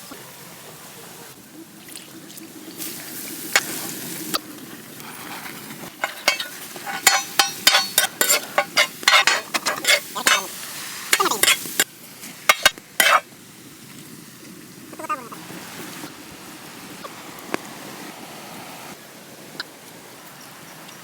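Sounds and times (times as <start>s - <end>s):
noodles sizzling in a pan: 2.6s - 13.8s
spatula scraping a pan: 3.6s - 3.8s, 5.1s - 11.9s, 12.5s - 13.2s.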